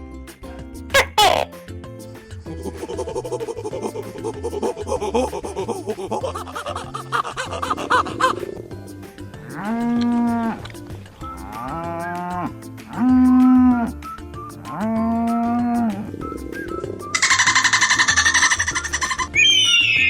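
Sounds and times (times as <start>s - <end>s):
light background music: 0.0s - 20.0s
cow mooing: 9.4s - 10.6s, 11.5s - 13.9s.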